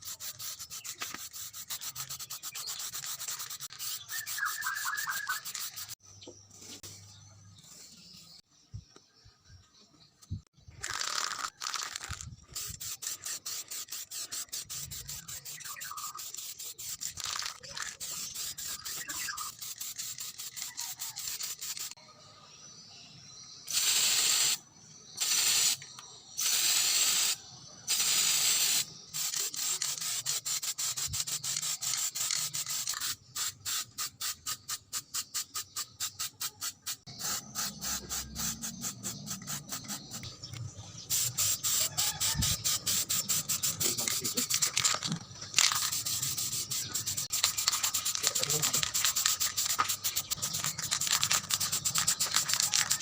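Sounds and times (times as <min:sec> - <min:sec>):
hand sanding strokes: 0:00.0 - 0:06.0
loud hissing bursts: 0:00.0 - 0:06.0, 0:10.8 - 0:22.0, 0:23.7 - 0:24.6, 0:25.2 - 0:40.3, 0:41.0 - 0:53.0.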